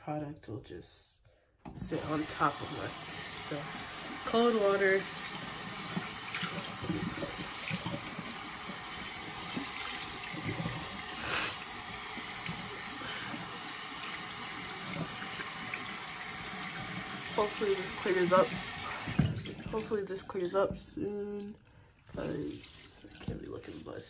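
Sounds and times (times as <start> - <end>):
tap running water: 1.6 - 24.0
water splashes: 1.8 - 24.0.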